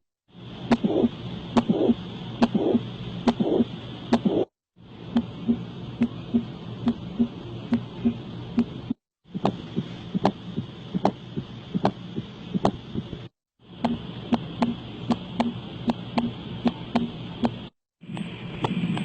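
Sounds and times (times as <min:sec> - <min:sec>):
heartbeats: 0:00.7 - 0:04.5, 0:05.2 - 0:14.8.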